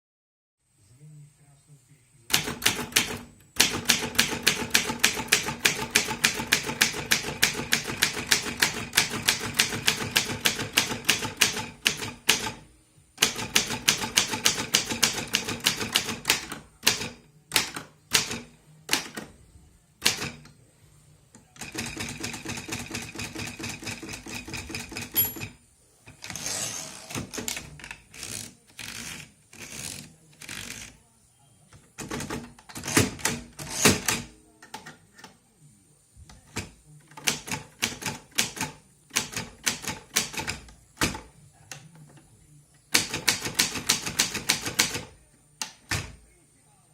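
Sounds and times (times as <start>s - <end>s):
typewriter keystrokes: 2.3s - 12.6s, 13.2s - 19.3s, 20.0s - 20.5s, 32.0s - 34.9s, 36.6s - 41.2s, 42.9s - 46.2s
typewriter carriage scraping: 26.1s - 31.0s.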